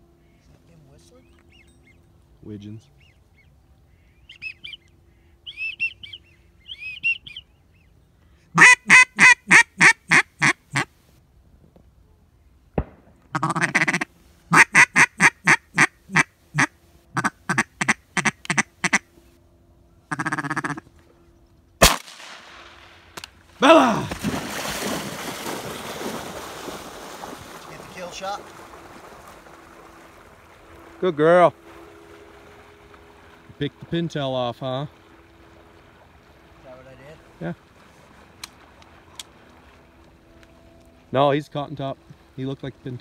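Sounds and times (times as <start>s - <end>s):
duck call quacks: 8.6s - 10.9s, 13.3s - 19.1s, 20.1s - 20.9s.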